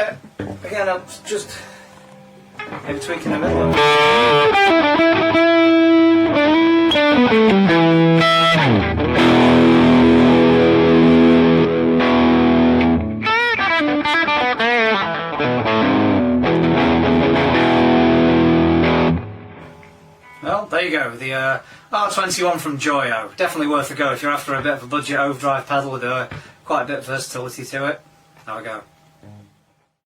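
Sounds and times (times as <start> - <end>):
distorted electric guitar: 2.6 - 20.4.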